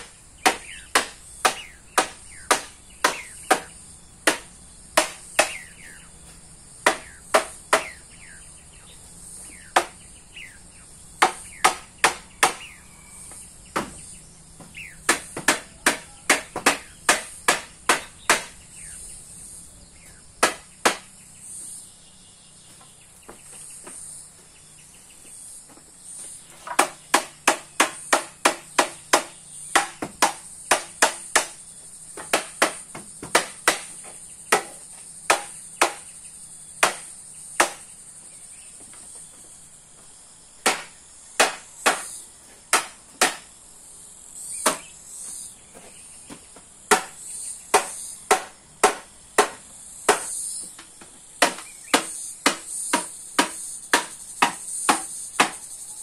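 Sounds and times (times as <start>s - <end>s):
sharp chopping strikes: 0.0s - 6.1s, 6.8s - 8.4s, 9.5s - 10.1s, 11.2s - 19.0s, 20.0s - 21.2s, 26.6s - 31.6s, 32.2s - 36.1s, 36.8s - 37.9s, 40.6s - 43.5s, 44.5s - 45.0s, 46.9s - 50.4s, 51.4s - 55.6s
bird chirps: 0.0s - 32.2s, 33.9s - 39.4s, 44.4s - 48.3s, 51.5s - 56.0s
insects shrilling: 0.0s - 56.0s.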